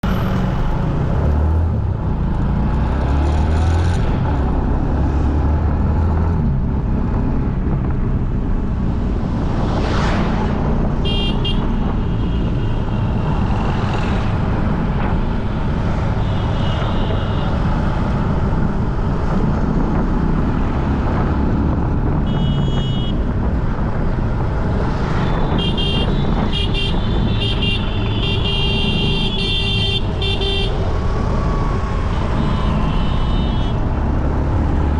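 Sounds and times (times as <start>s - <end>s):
road traffic rumble: 0.0s - 34.9s
vehicle passing close by: 9.3s - 10.9s
car horns honking: 11.0s - 12.8s, 22.2s - 23.3s, 25.2s - 30.9s, 32.2s - 33.9s.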